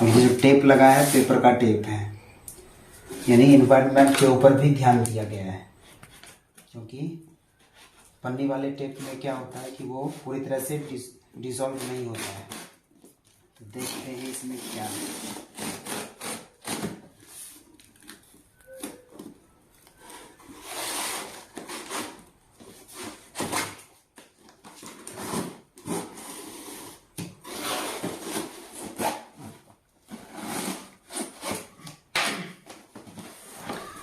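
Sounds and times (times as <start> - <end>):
cardboard package scraping and rustling: 11.7 - 31.9, 32.7 - 34.0.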